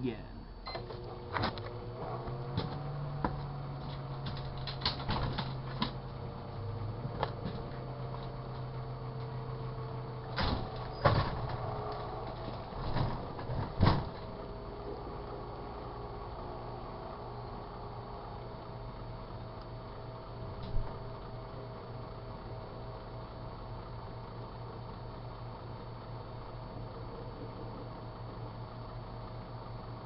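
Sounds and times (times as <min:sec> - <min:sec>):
microwave oven humming: 0:00.0 - 0:30.0
sharp clicks and knocks: 0:02.5 - 0:06.0.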